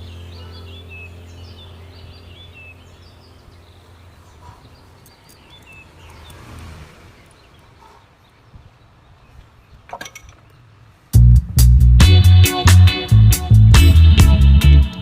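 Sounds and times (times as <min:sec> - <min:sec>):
low steady hum: 0:00.0 - 0:07.4
birds chirping: 0:00.0 - 0:11.3.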